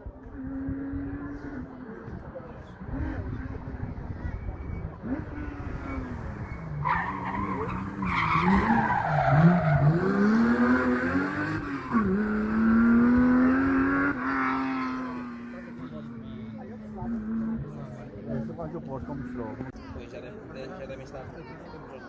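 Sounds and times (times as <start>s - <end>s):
car engine revving hard: 5.0s - 15.4s.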